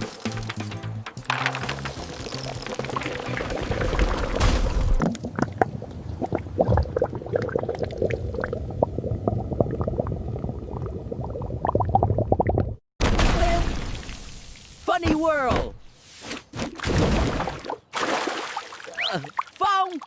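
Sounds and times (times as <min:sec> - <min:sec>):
cola fizzing and bubbling: 0:02.1 - 0:04.4, 0:05.0 - 0:12.8.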